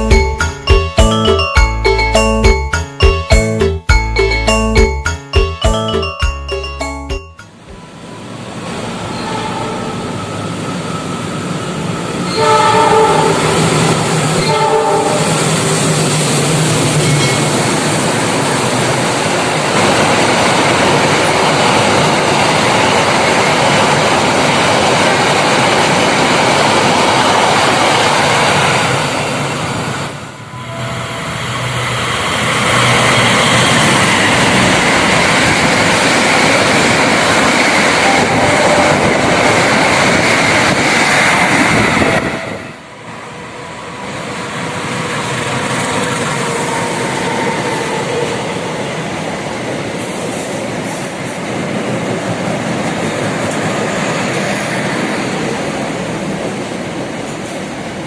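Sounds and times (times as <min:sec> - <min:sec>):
train wheel and rail noise: 0:00.0 - 0:58.0
train horn blasts: 0:12.3 - 0:15.6, 0:30.4 - 0:31.8, 0:37.9 - 0:39.4.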